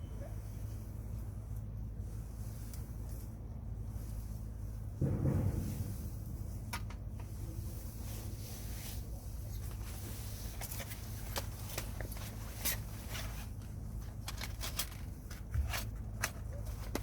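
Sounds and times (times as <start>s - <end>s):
strong wind rumble: 5.0s - 8.7s
clicks and scrapes of handling: 9.5s - 17.0s.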